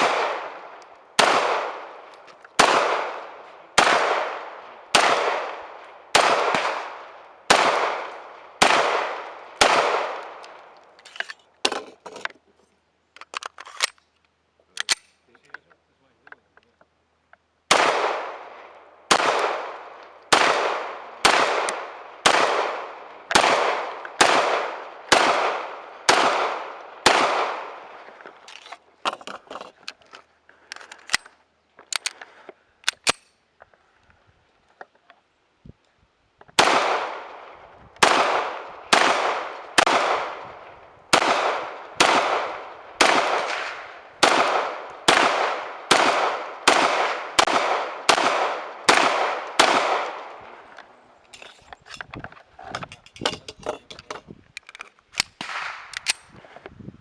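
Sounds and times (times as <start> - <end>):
gunshots with echo: 0.0 - 2.0, 2.6 - 10.4, 17.7 - 18.5, 19.1 - 27.9, 36.6 - 50.4
light gun clicks and clanks: 10.1 - 17.5, 28.0 - 33.8, 45.9 - 56.6.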